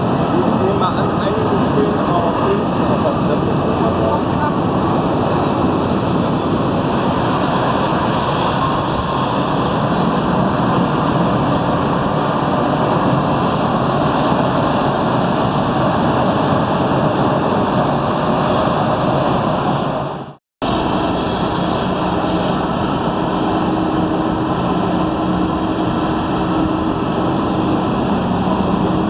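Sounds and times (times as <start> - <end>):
jet engines roaring: 0.0 - 29.0.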